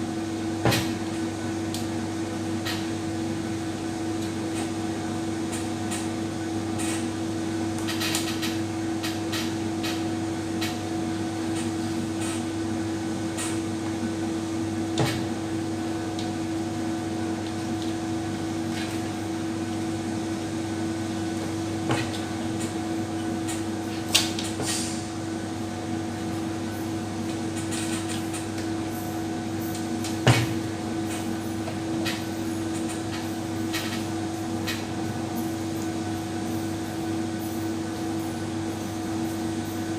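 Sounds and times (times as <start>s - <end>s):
steady machine hum: 0.0s - 39.9s.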